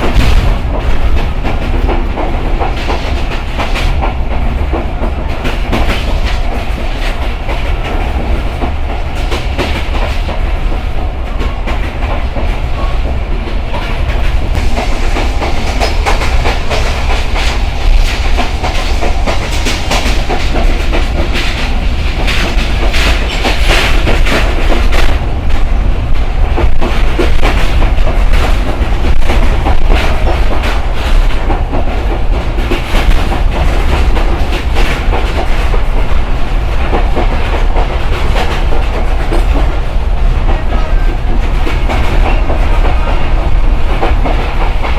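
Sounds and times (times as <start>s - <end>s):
heavy train rumble: 0.0s - 44.9s
train wheels clattering on rails: 0.0s - 44.9s.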